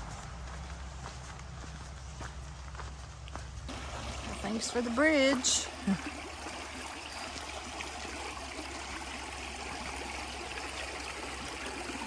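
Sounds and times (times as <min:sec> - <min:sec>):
creek water rushing: 0:03.7 - 0:12.0.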